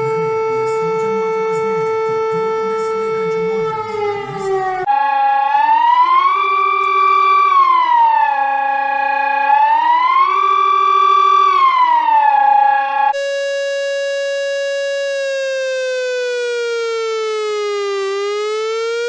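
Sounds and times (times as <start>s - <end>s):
rising and falling siren: 0.0s - 19.0s
slow wailing siren: 0.0s - 19.0s.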